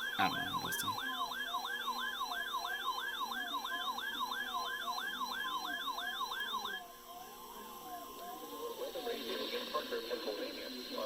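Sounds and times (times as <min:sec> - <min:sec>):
warbling alarm tone: 0:00.0 - 0:03.1
steady alarm tone: 0:00.0 - 0:08.6.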